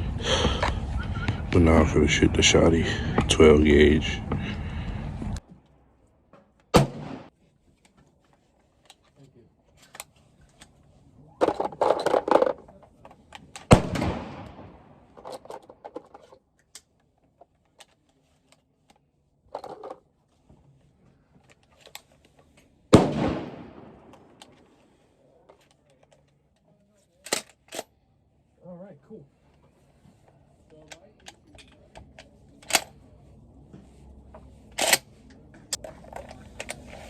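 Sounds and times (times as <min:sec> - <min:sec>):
shotgun shots echoing: 0:06.7 - 0:07.3, 0:13.7 - 0:15.0, 0:22.9 - 0:24.4
clicks and clatter: 0:15.1 - 0:20.0.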